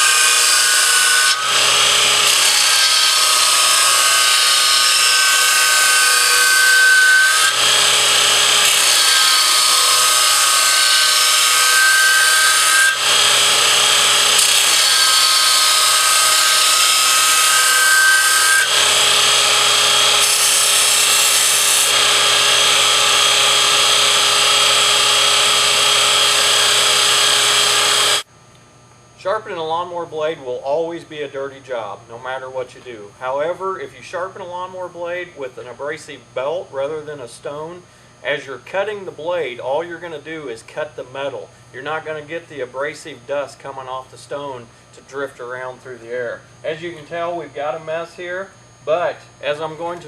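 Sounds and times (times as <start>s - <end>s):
belt grinder grinding steel: 0.0s - 28.2s.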